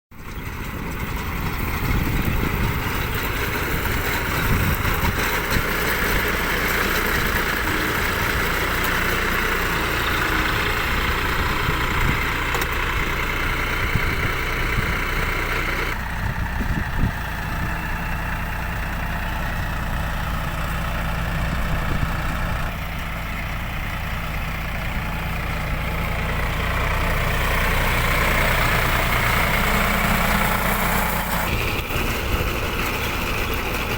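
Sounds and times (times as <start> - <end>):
engine running steadily: 0.2 - 33.9.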